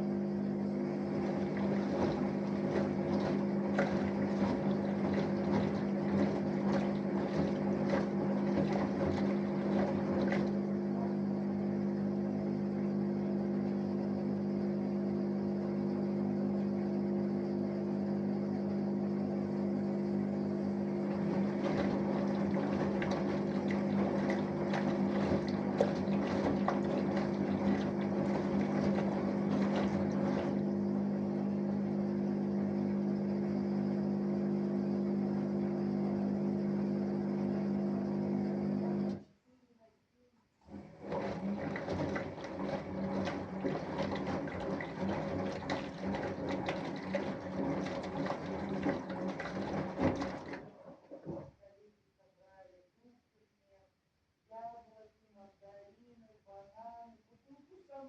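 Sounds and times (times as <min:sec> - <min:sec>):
washing machine motor hum: 0:00.0 - 0:39.2, 0:40.6 - 0:51.6
laundry and water sloshing: 0:00.9 - 0:11.2, 0:20.8 - 0:31.7, 0:40.7 - 0:51.6.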